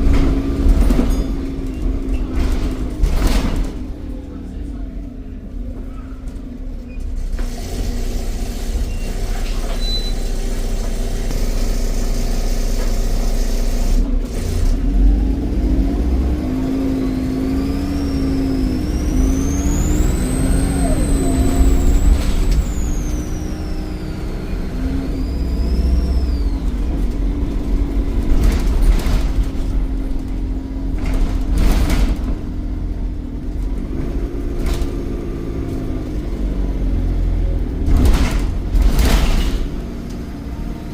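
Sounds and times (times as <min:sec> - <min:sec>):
diesel bus engine under load: 0:00.0 - 0:40.9
turbocharger whistling: 0:16.9 - 0:27.0.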